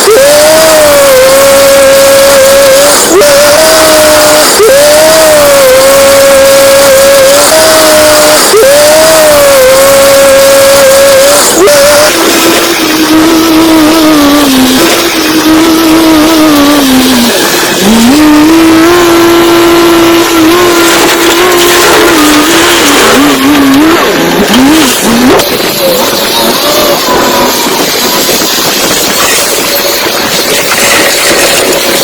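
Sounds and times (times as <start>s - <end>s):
diesel engine running under load: 8.9s - 32.0s.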